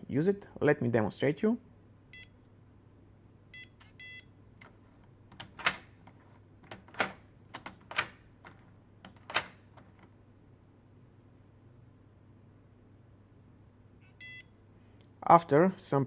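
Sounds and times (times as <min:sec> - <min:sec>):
door lock beeping: 0:03.6 - 0:04.3, 0:14.0 - 0:14.5
lock handle and latch clicking: 0:04.6 - 0:10.1.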